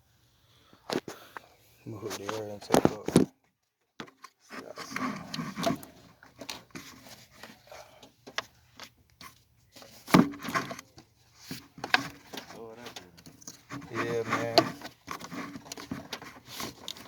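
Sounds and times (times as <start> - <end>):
plastic duct clicks and knocks: 10.0 - 17.0.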